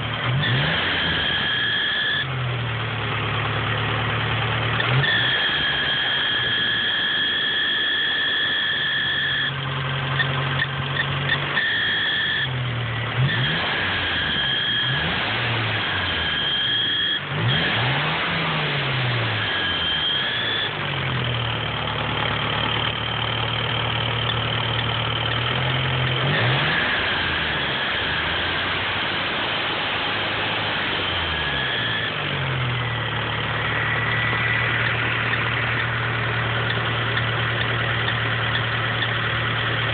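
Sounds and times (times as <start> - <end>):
car engine revving: 0.0 - 39.9
high-pitched belt squeal: 0.4 - 2.3, 4.9 - 9.6, 10.2 - 12.6, 13.2 - 18.0, 19.1 - 20.8, 26.1 - 39.9.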